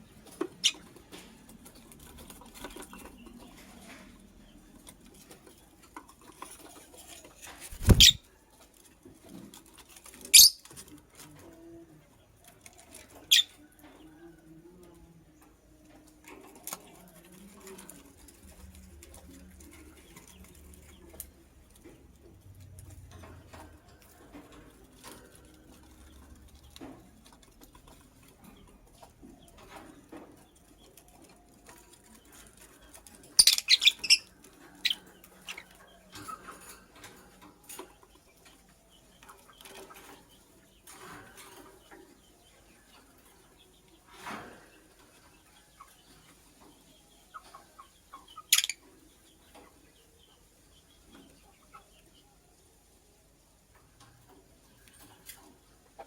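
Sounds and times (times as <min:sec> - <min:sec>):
faint rustles and clicks: 0:00.1 - 0:47.6
lovebird chirping: 0:07.7 - 0:08.2, 0:10.3 - 0:10.6, 0:33.4 - 0:35.7, 0:48.1 - 0:48.8.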